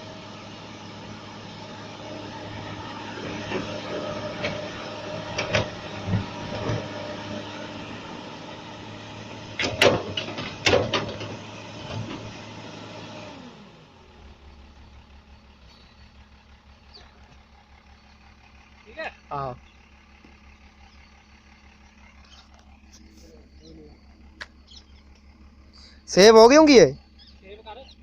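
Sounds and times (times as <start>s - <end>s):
excavator diesel engine running: 0.0s - 28.0s
loud metal clanks and knocks: 9.6s - 12.3s.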